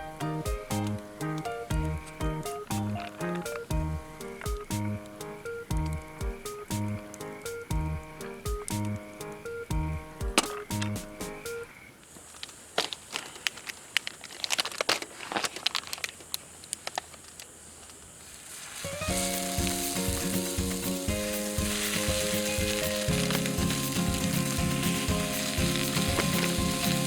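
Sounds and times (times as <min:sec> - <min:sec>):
music with held notes: 0:00.0 - 0:11.6, 0:19.0 - 0:27.0
sharp clicks and taps: 0:00.5 - 0:11.5
food sizzling in a pan: 0:18.2 - 0:27.0.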